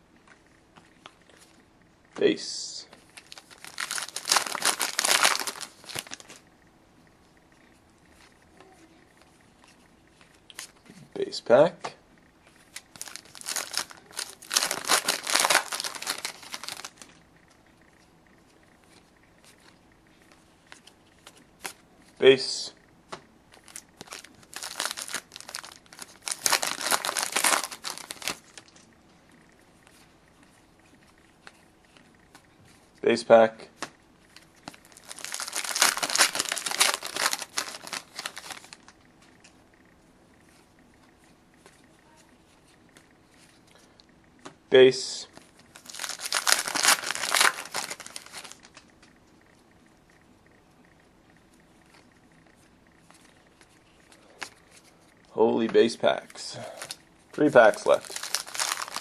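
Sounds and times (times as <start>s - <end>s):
foil wrapper tearing and crinkling: 3.2s - 6.4s, 12.8s - 17.0s, 23.7s - 28.7s, 34.7s - 38.9s, 45.7s - 48.8s, 57.6s - 59.0s.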